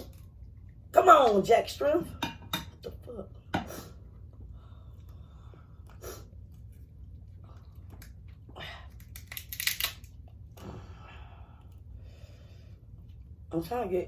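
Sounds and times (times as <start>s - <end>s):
crab shell crunching and crackling: 7.6s - 10.5s.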